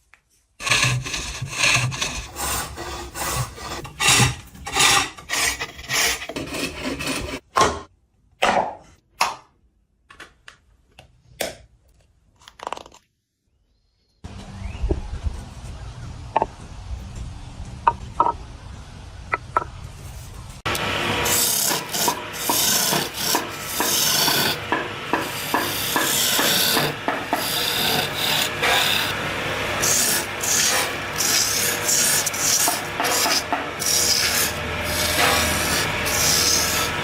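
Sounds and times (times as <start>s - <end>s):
hand tool rasping across wood: 0.6s - 7.4s, 21.3s - 37.0s.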